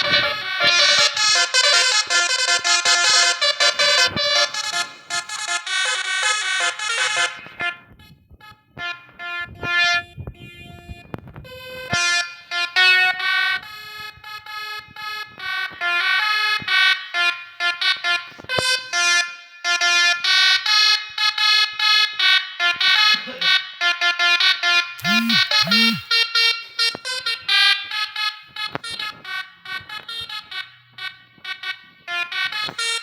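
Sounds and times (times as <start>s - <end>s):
multi-tone bus air horn tune: 0.0s - 13.9s, 15.0s - 20.4s, 22.6s - 26.1s, 32.0s - 33.0s.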